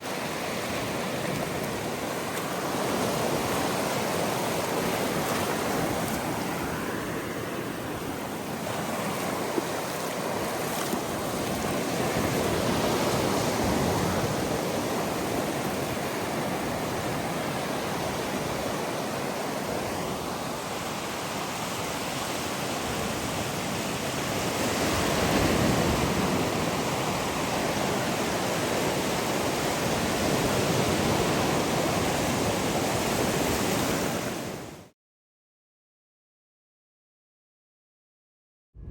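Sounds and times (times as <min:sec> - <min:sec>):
ocean waves washing: 0:00.0 - 0:34.9.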